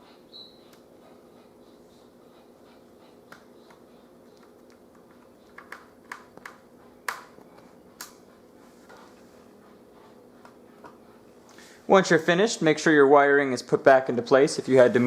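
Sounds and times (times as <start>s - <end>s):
faint steady hum: 0.0s - 15.0s
screwdriver clicks and taps: 5.6s - 7.3s.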